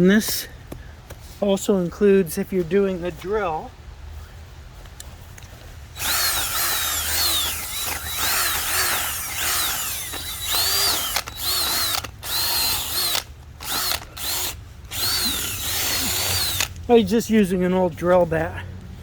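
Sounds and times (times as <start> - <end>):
power drill boring into clay: 6.0 - 16.7.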